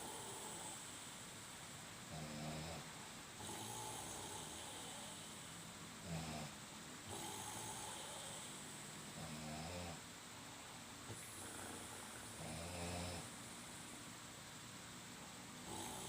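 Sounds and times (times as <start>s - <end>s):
person snoring: 0.0s - 1.1s, 3.4s - 6.5s, 7.1s - 10.0s, 11.1s - 13.4s, 15.6s - 16.0s
soft breaths: 0.0s - 14.4s.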